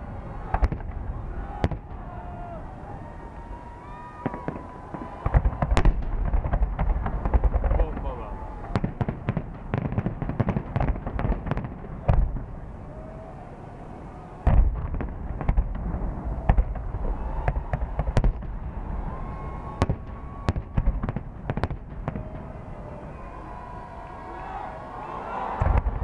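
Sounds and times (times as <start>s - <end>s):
deep firework boom: 0.0s - 12.6s, 14.4s - 23.7s, 25.5s - 26.0s
fireworks cracks and bangs: 0.0s - 13.2s, 14.4s - 24.0s, 25.5s - 26.0s
faint firework whistles: 19.0s - 21.0s.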